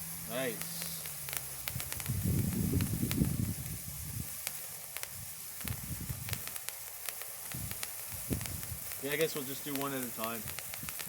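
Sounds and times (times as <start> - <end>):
sparkler firework hissing and crackling: 0.0 - 11.0.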